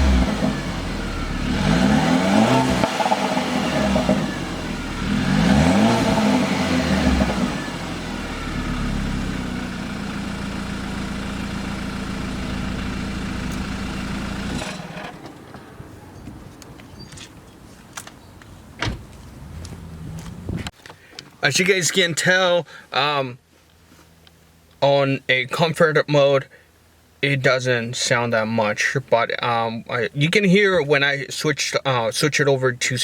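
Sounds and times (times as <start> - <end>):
car engine revving and idling: 0.0 - 15.2.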